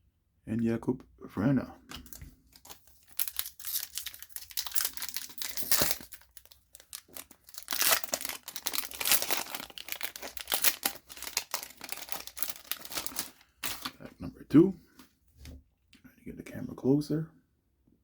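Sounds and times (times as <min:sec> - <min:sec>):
plastic wrapper crinkling and tearing: 0:01.9 - 0:14.1.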